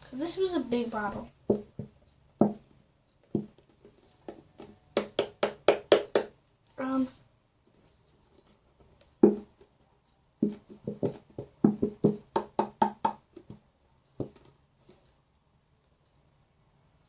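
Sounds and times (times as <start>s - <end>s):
glue bottle knocking on container: 1.5s - 2.6s, 9.2s - 9.5s, 10.4s - 13.6s.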